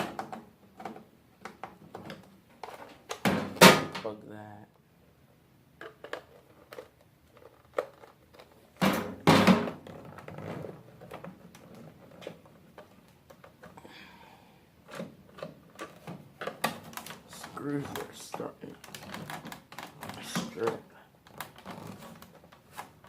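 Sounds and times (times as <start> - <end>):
plastic casing handled: 5.8 - 13.8, 14.8 - 23.0.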